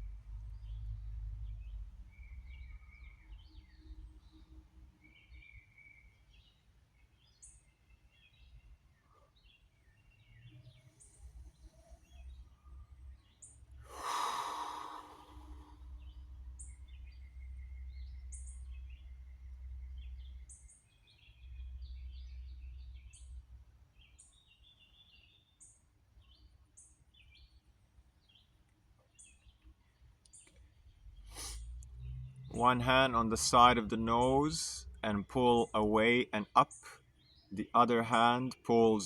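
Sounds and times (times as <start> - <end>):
small birds chirping: 0.0 - 39.0
person exhaling: 13.8 - 16.1, 31.3 - 31.7.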